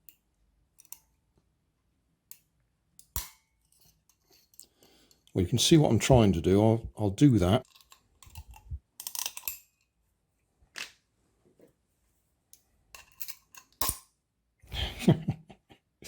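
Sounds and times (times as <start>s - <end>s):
small metallic clicks and scrapes: 0.0s - 1.2s, 2.3s - 5.3s, 7.6s - 9.9s, 12.5s - 14.1s.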